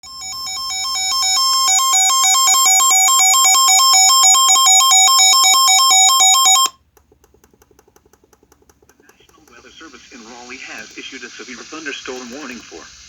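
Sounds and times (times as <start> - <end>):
faint regular ticking: 6.8 - 12.8.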